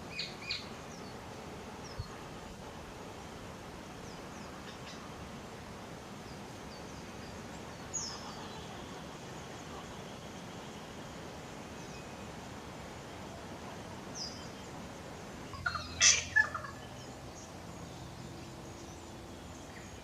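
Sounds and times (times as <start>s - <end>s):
outdoor background hiss: 0.0s - 20.0s
wild birds calling: 3.9s - 5.7s, 6.3s - 20.0s.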